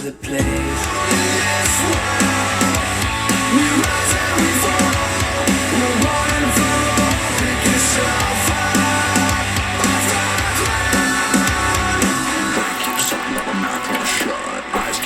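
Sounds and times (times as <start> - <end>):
instrumental music through speaker: 12.5 - 15.0.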